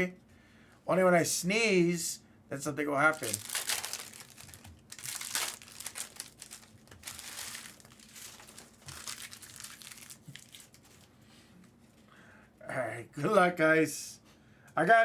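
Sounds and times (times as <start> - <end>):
plastic wrapping crinkling and tearing: 3.0 - 11.1.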